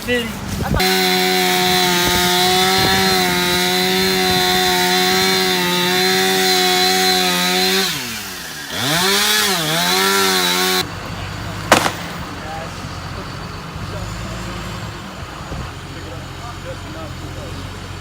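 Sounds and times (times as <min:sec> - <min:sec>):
chainsaw revving: 0:00.7 - 0:10.8, 0:11.7 - 0:12.4.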